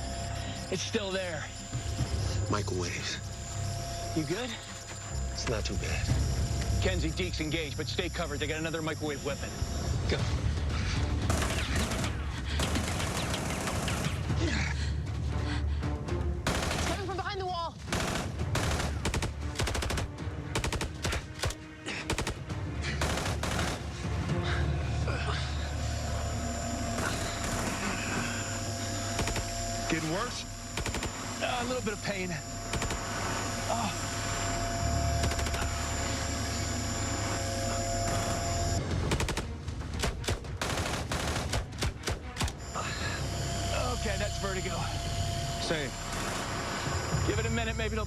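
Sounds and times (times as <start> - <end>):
low hum: 0.0 - 17.1, 22.4 - 48.0
gunfire: 11.2 - 14.3, 16.4 - 17.2, 17.8 - 24.1, 29.2 - 29.6, 30.8 - 31.2, 32.7 - 33.1, 38.9 - 42.6
rapid gunshots: 11.2 - 14.4, 16.4 - 24.2, 26.9 - 28.4, 29.0 - 31.8, 32.7 - 33.4, 35.2 - 35.9, 38.2 - 42.6
thin high steady tones: 42.6 - 48.0.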